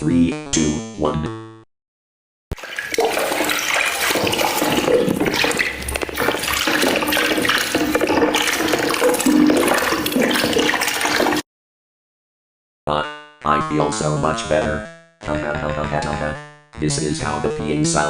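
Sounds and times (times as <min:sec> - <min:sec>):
water splashing into toilet bowl: 0:02.6 - 0:11.4.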